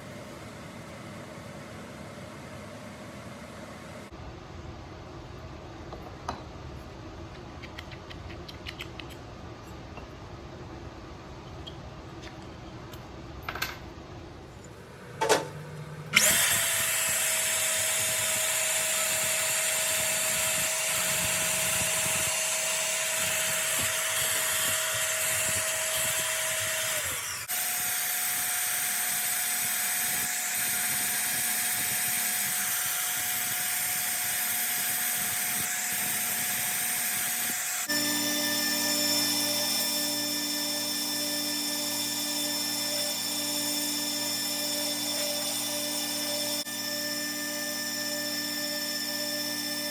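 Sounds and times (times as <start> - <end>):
power tool whining: 15.0 - 49.9.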